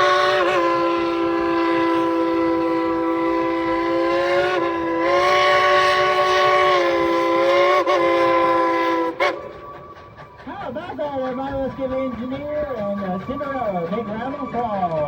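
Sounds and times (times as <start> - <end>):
steam locomotive whistle blast: 0.0 - 10.2.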